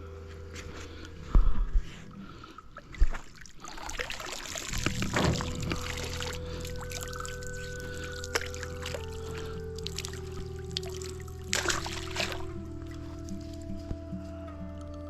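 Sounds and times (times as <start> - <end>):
faint steady tones: 0.0 - 15.0
water splashing and pouring: 1.3 - 13.9
dull thumps: 4.6 - 14.2.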